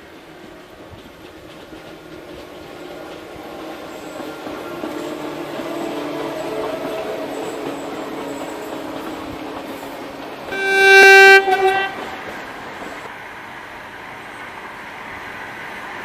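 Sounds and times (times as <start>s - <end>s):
train running noise: 0.0s - 16.0s
train horn blast: 4.1s - 12.3s.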